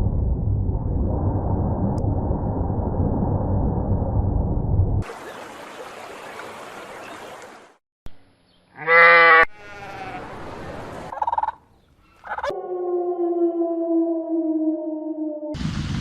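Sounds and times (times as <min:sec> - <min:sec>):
sheep bleating: 0:08.7 - 0:10.4.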